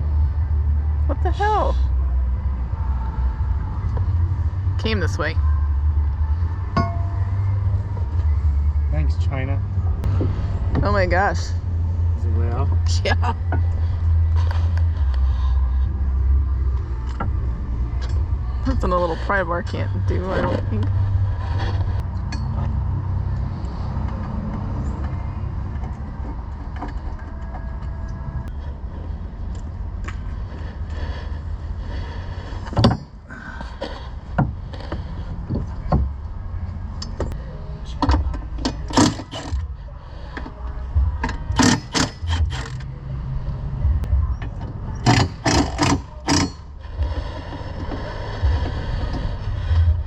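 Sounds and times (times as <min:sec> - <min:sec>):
low rumble: 0:00.0 - 0:38.6, 0:42.2 - 0:45.1, 0:46.0 - 0:50.0.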